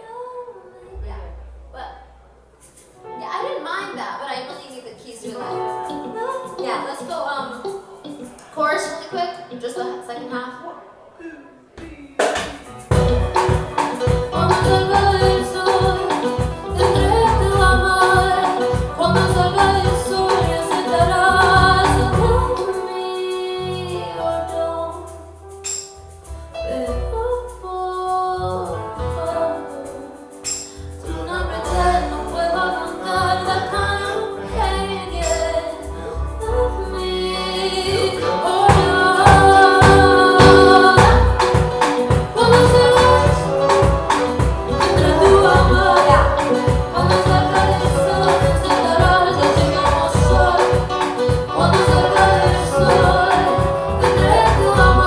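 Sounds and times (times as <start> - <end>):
woman singing: 0.0 - 1.2, 13.4 - 25.2, 26.7 - 30.4, 31.1 - 55.0
bass notes: 0.9 - 2.6, 12.9 - 22.6, 23.6 - 29.6, 30.8 - 55.0
drums: 12.2 - 22.5, 38.7 - 55.0.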